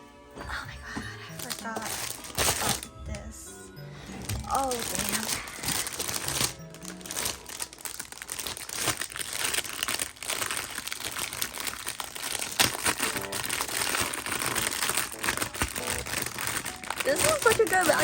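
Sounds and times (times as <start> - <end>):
packaging crinkling: 1.3 - 18.0.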